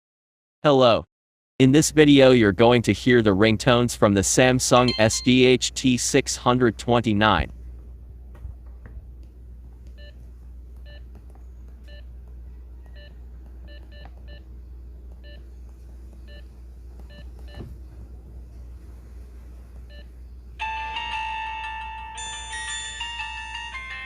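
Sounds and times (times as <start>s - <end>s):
phone key-press beeps: 4.8s - 5.4s
chiming ringtone melody: 4.8s - 5.5s, 20.6s - 24.0s.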